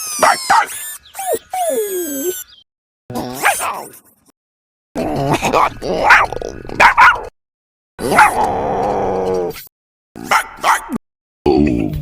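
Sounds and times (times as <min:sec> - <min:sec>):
cartoon dog barks and yips: 0:00.0 - 0:02.5, 0:03.1 - 0:04.2, 0:06.0 - 0:07.3, 0:08.0 - 0:08.5, 0:10.2 - 0:11.0.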